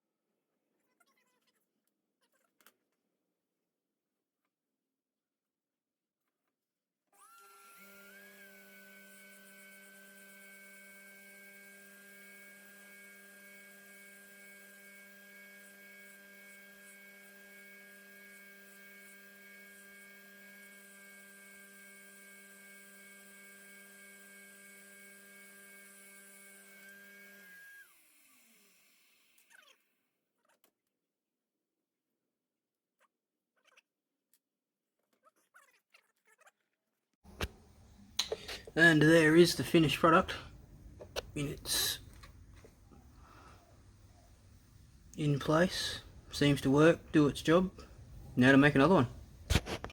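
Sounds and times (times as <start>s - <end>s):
electric grinder motor whining: 7.2s - 29.8s, 38.2s - 43.4s.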